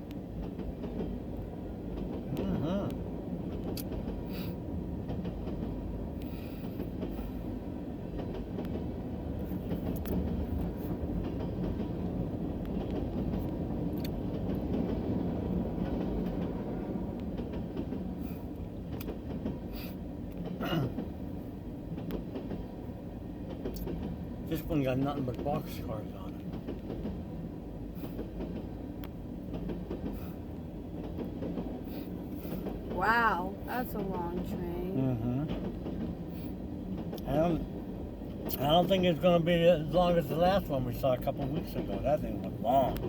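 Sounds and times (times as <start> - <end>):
train wheels rumbling on rail: 0.0 - 43.0.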